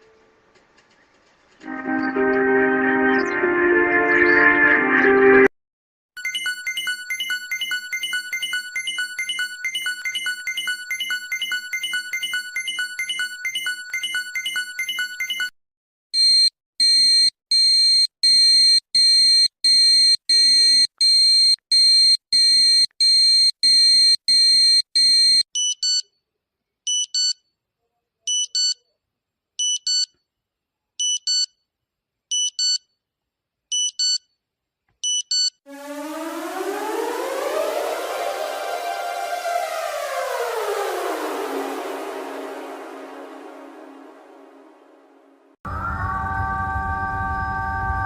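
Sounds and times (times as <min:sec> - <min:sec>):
warning siren rising in pitch: 0:01.6 - 0:05.2, 0:35.7 - 0:48.0
high pulsed alarm tones: 0:35.7 - 0:48.0.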